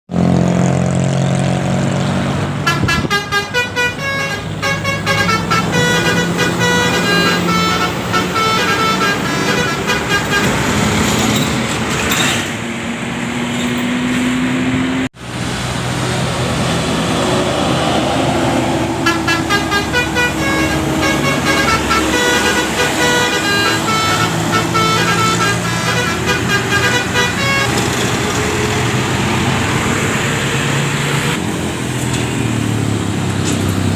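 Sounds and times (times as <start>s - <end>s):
bus engine running: 0.1s - 33.9s
multi-tone bus horns: 2.6s - 11.6s, 18.8s - 31.4s.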